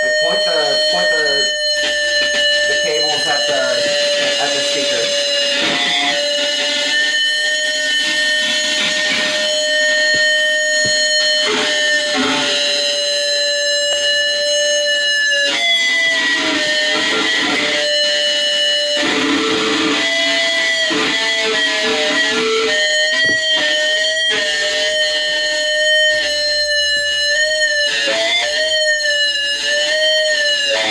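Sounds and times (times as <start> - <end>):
electric guitar feedback: 0.0 - 30.9
strummed electric guitar: 0.0 - 30.9.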